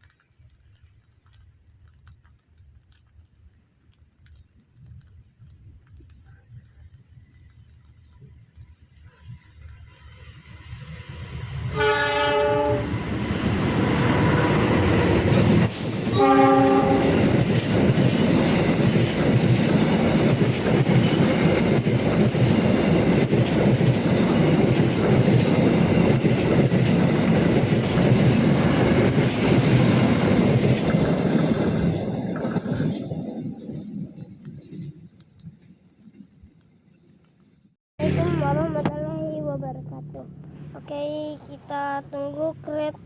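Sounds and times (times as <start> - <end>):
train wheels rumbling on rails: 4.1 - 43.0
train horn: 11.7 - 13.0, 16.1 - 17.3.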